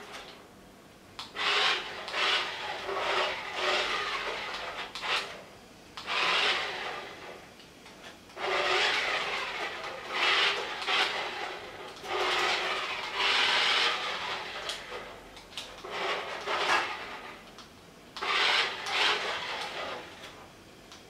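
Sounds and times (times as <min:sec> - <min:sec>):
toy vehicle motor and gears: 0:01.2 - 0:05.4, 0:06.0 - 0:07.4, 0:08.4 - 0:17.4, 0:18.2 - 0:20.4.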